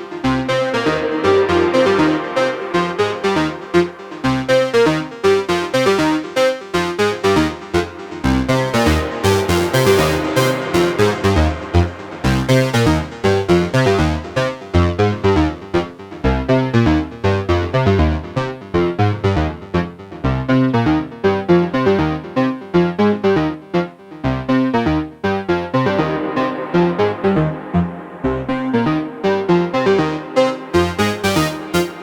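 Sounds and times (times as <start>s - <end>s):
synthesizer bass part: 0.0s - 5.6s, 7.3s - 15.8s, 25.5s - 32.0s
synthesizer fast run of notes: 8.2s - 14.8s.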